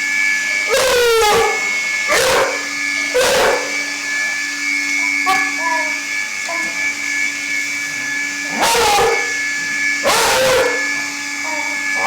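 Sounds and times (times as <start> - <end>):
vacuum cleaner whining: 0.0 - 12.0
dog barking: 0.7 - 3.9, 5.0 - 5.9, 8.5 - 9.4, 10.0 - 12.0.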